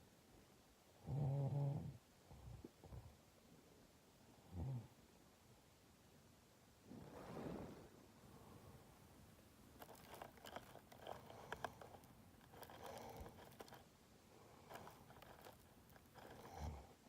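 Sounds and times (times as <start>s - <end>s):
congested breathing with crackling clicks: 9.8s - 17.0s.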